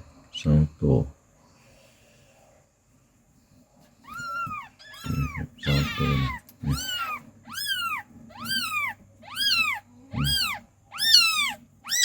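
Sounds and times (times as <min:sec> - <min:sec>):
newborn kittens mewing: 0:04.0 - 0:12.0.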